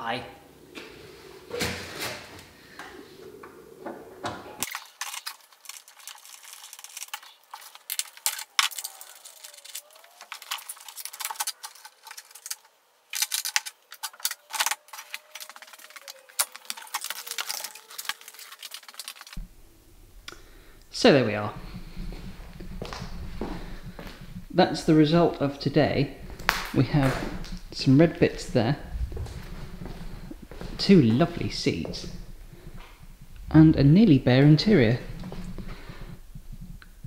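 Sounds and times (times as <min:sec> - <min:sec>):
hand tools clinking and clicking: 0:04.6 - 0:19.4.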